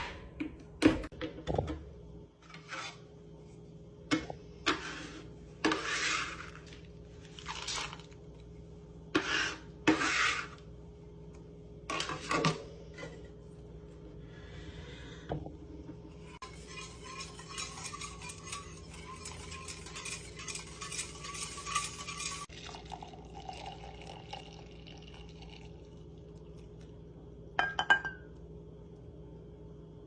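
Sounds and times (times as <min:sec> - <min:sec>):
liquid pouring and stirring: 0:16.3 - 0:27.0.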